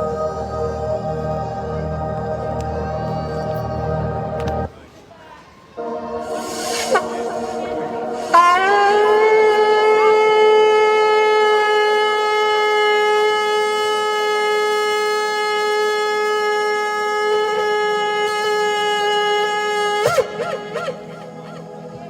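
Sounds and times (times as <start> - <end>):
shofar blast: 5.8 - 22.0.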